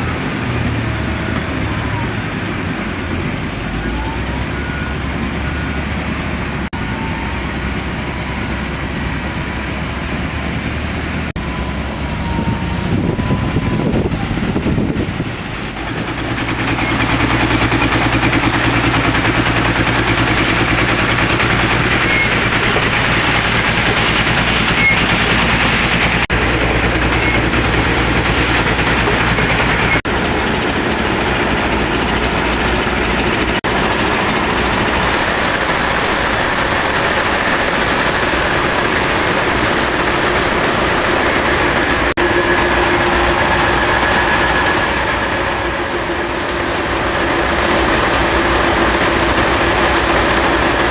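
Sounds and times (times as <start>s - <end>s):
machinery mechanical din: 11.3s - 50.9s.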